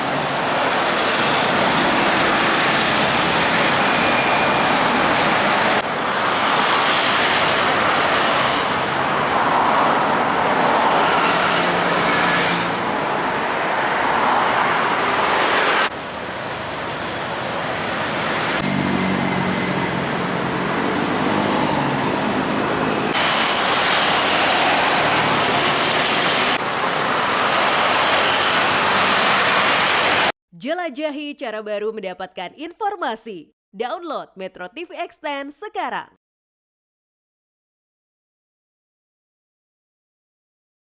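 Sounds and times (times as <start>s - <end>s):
road traffic noise: 0.0s - 30.3s.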